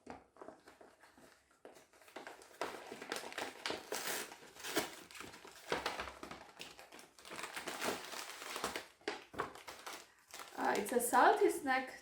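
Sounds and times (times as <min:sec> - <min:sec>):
snack wrapper crinkling: 0:02.1 - 0:10.9.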